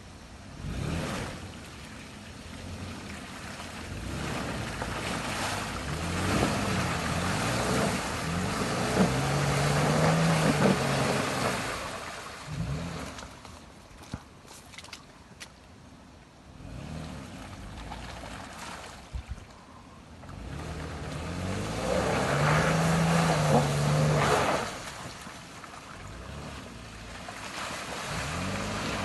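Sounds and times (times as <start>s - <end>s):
car engine revving: 0.5s - 1.6s, 2.6s - 13.3s, 16.5s - 18.5s, 20.2s - 24.9s, 26.0s - 29.0s.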